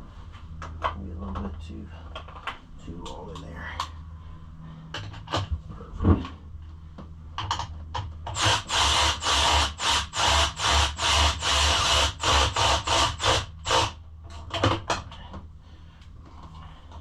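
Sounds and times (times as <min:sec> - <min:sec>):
ratchet wrench ratcheting: 0:08.3 - 0:14.0.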